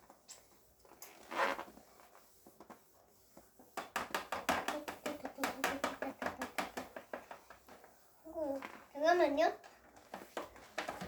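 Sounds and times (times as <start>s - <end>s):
plastic bottle tapping: 3.8s - 7.4s.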